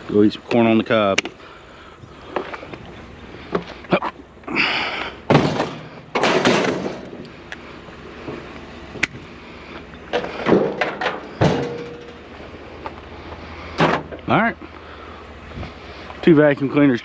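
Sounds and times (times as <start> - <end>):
plastic scrap clattering crashes: 5.3 - 7.2, 10.1 - 12.2.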